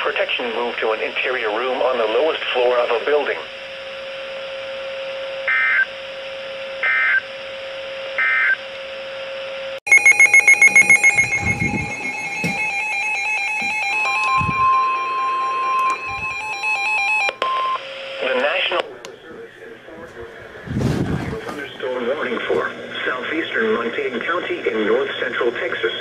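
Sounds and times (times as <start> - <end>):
steady hum: 0.0 - 26.0
warbling data bursts: 9.9 - 15.0
steady alert tone: 9.9 - 16.6
rapid electronic beeping alarm: 9.9 - 17.8.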